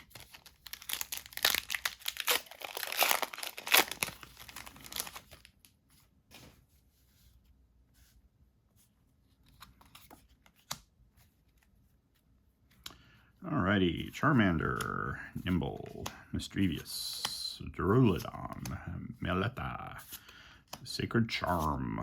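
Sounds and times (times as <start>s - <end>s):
foil wrapper crinkling and tearing: 0.0s - 5.5s.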